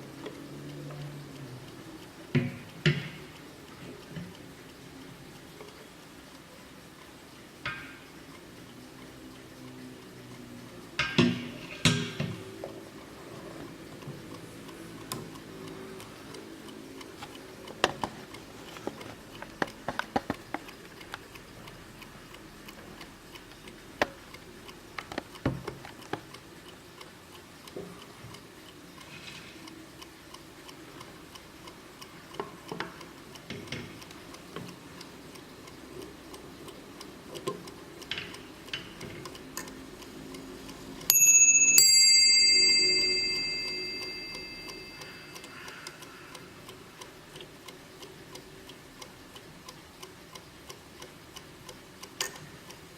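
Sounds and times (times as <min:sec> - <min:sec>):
mantel clock ticking: 0:00.0 - 0:52.9
clock striking double bell: 0:41.1 - 0:45.5.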